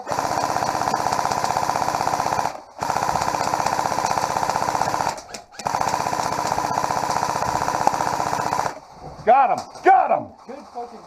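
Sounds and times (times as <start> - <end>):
airsoft gun firing full-auto: 0.0 - 8.8.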